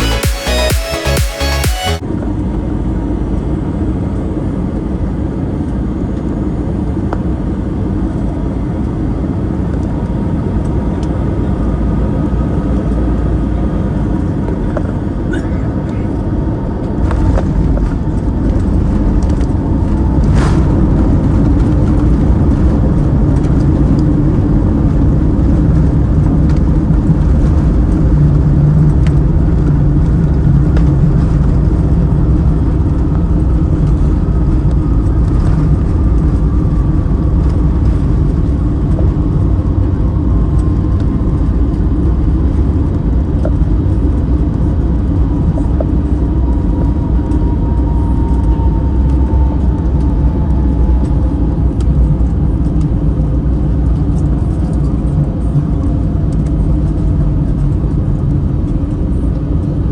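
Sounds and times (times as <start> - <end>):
aircraft cabin engine rumble: 2.0 - 59.9
faint falling whine: 16.8 - 59.8.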